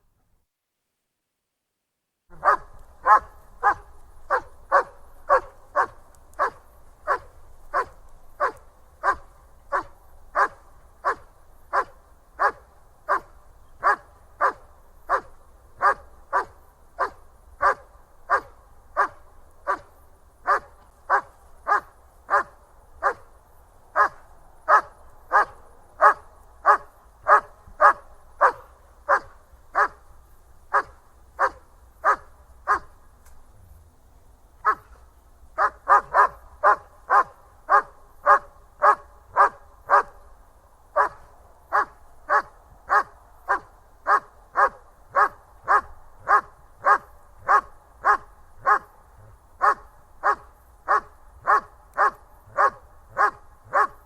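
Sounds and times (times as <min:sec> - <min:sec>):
dog barking: 0:02.3 - 0:19.9, 0:20.5 - 0:23.3, 0:24.0 - 0:30.0, 0:30.7 - 0:32.9, 0:34.6 - 0:35.0, 0:35.6 - 0:40.2, 0:41.0 - 0:54.0.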